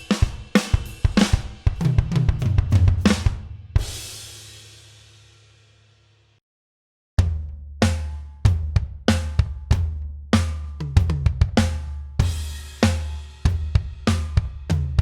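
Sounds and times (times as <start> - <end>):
drum kit groove: 0.0 - 5.4, 7.2 - 15.0.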